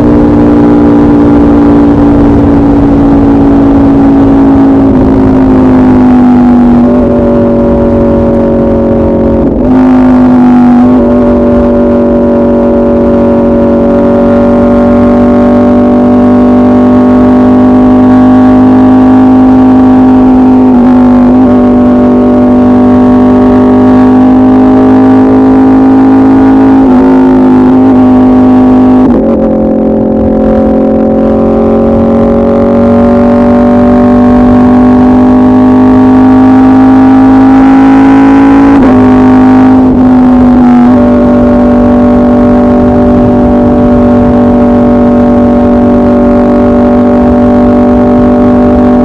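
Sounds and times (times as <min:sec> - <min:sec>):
motorcycle engine revving high: 0:00.0 - 0:49.0.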